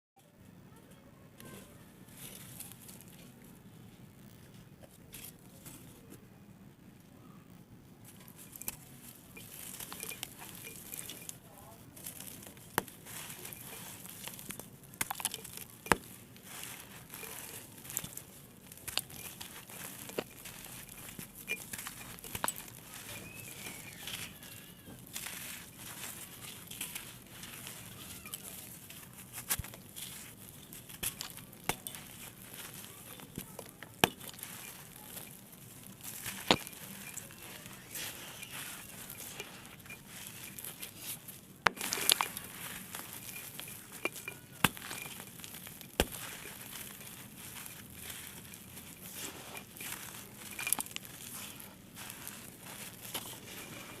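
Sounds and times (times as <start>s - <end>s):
dried clay crushed and crackling: 0.2s - 54.0s
clay pieces snapping: 40.0s - 54.0s.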